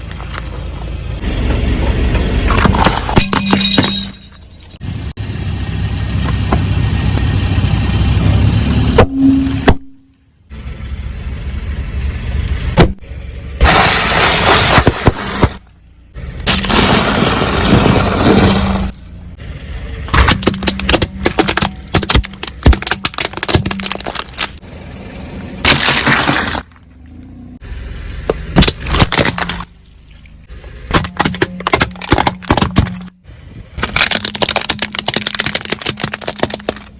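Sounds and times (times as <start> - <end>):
car engine humming: 0.0 - 36.9
tyre crushing objects: 13.6 - 15.7, 20.1 - 24.6, 25.6 - 26.8, 30.9 - 33.2, 33.8 - 36.9.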